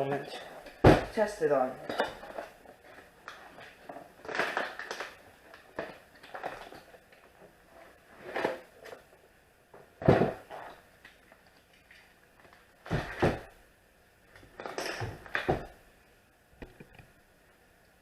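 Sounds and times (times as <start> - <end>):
packaging crinkling and rustling: 0.7 - 9.0
thump: 0.8 - 1.2.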